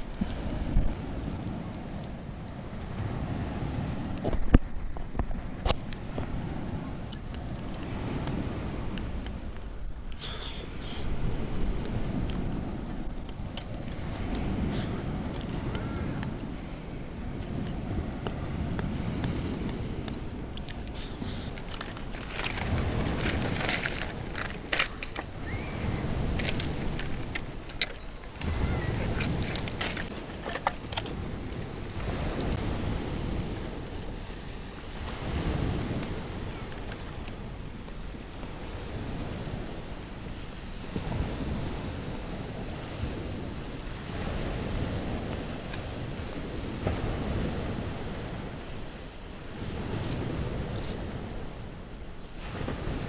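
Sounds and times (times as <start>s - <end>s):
sea waves washing on shore: 0.0s - 53.0s
wind rumble on microphone: 0.0s - 53.0s
campfire crackling and popping: 19.2s - 32.5s.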